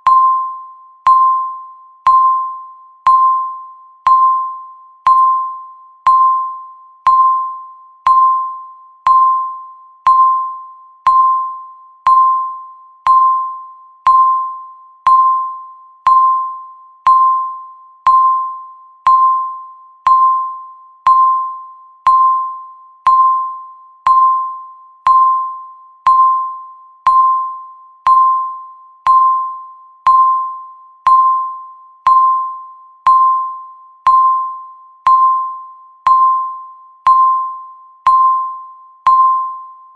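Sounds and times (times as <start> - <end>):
bell-like electronic beeps: 0.0 - 39.9.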